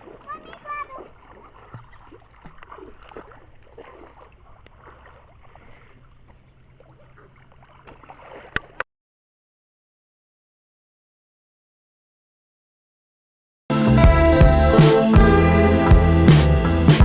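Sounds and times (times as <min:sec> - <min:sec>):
floodwater splashing and lapping: 0:00.0 - 0:08.9.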